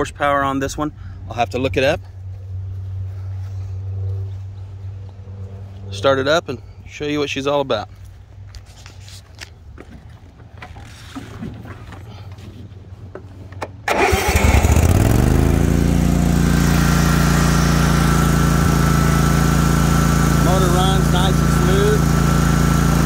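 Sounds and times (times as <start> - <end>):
mower engine cranking and running: 13.5 - 23.0.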